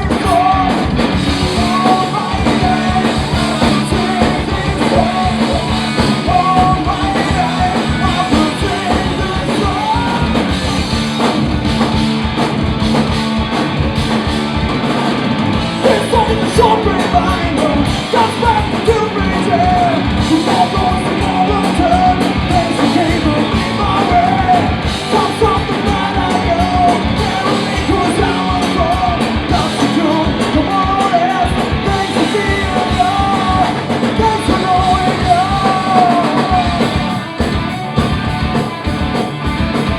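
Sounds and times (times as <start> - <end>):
sung and shouted vocals: 0.0 - 11.0, 15.8 - 37.2
punk rock band playing live: 0.0 - 39.9.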